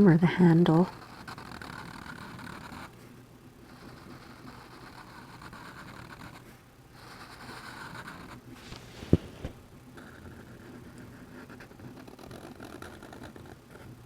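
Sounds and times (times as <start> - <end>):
marker scratching on paper: 0.8 - 2.9, 3.7 - 9.2, 10.0 - 13.9.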